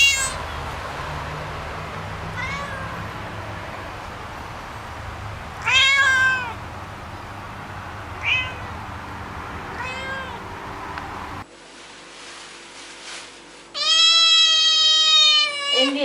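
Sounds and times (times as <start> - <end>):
cat meowing: 0.0 - 0.4, 2.3 - 3.0, 5.6 - 6.6, 8.2 - 8.9, 9.7 - 10.4, 13.8 - 16.0.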